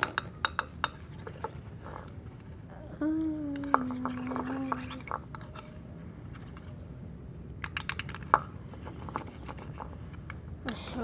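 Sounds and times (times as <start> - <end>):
spoon tapping against a bowl: 0.0 - 1.1
person humming: 2.7 - 5.1.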